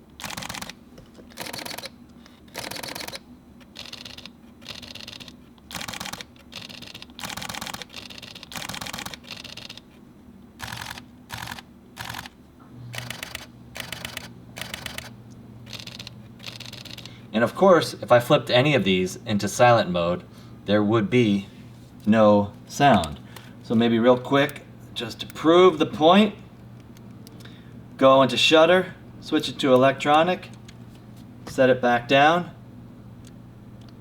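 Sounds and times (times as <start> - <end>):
rapid camera shutter clicks: 0.1 - 10.0, 10.6 - 17.2.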